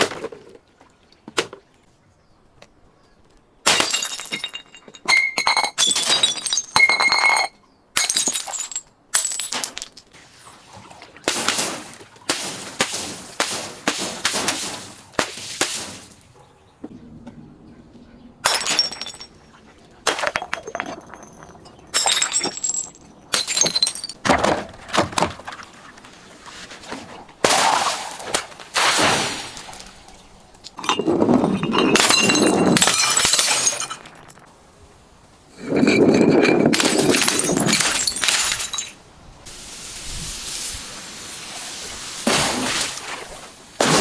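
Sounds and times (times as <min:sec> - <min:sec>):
glass bottles breaking: 0:03.7 - 0:10.1, 0:18.4 - 0:19.4, 0:20.0 - 0:24.2, 0:30.8 - 0:34.5, 0:35.7 - 0:39.0.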